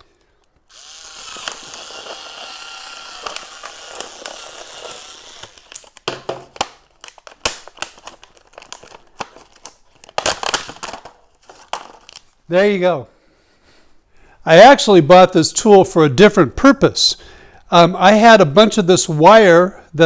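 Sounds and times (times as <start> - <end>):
plastic crinkling: 0.2 - 12.5
cutter blade cutting plastic: 0.7 - 8.2.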